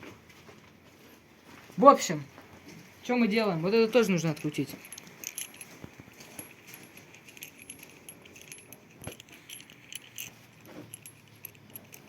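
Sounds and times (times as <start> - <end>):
hand tool clinking on metal: 3.4 - 12.0.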